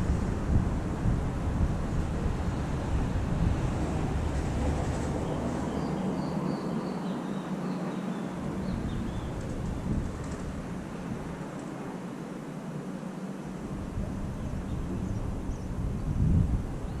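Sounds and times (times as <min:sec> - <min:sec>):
outdoor rumble and hiss: 0:00.0 - 0:17.0.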